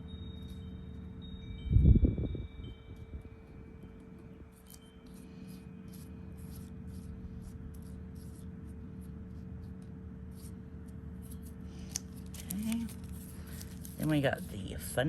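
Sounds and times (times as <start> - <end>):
steady low hum: 0.0 - 15.0
hands scratching potting mix: 4.0 - 15.0.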